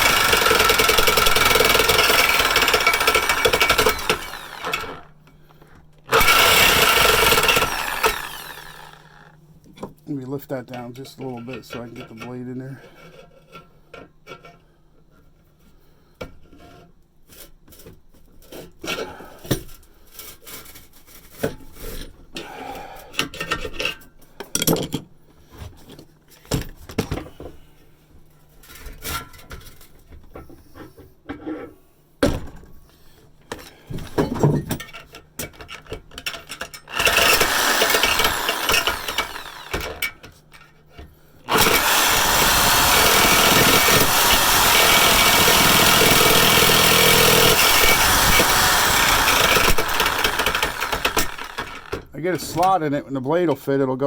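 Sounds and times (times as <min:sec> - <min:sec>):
power saw cutting metal pipe: 0:00.0 - 0:05.1, 0:06.1 - 0:09.4, 0:36.8 - 0:40.2, 0:41.5 - 0:52.1.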